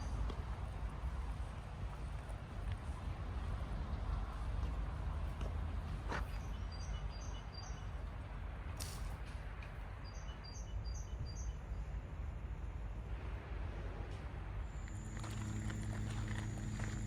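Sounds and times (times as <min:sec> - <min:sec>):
steady low rumble: 0:12.1 - 0:17.0.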